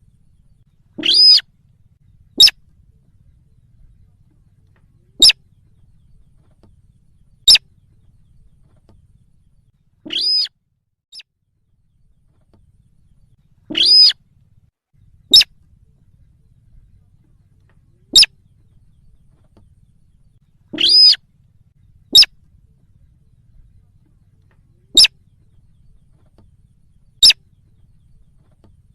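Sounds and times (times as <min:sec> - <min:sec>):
recorded bird calls: 0:00.0 - 0:28.9.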